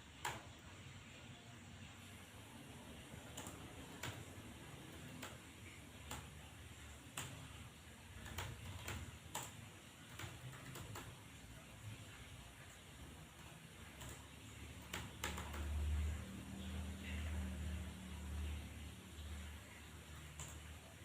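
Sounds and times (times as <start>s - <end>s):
faint low hum: 0.0s - 21.0s
keyboard key clicks: 8.2s - 11.2s, 13.4s - 15.7s.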